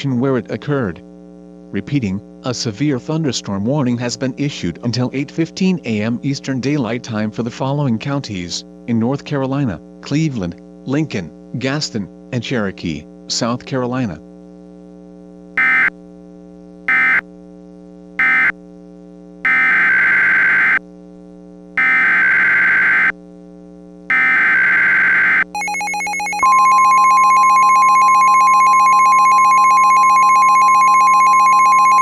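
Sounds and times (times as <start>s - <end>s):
steady hum: 0.0s - 32.0s
screeching digital data tones: 15.6s - 15.9s, 19.5s - 20.8s, 21.8s - 23.1s, 24.1s - 32.0s
warning alarm tone: 15.6s - 15.9s, 16.9s - 17.2s, 18.2s - 18.5s, 19.5s - 20.8s, 21.8s - 23.1s, 24.1s - 32.0s
loud buzzy alarm: 15.6s - 16.0s, 16.9s - 17.3s, 18.2s - 18.6s, 19.4s - 20.8s, 21.8s - 23.2s, 24.1s - 32.0s.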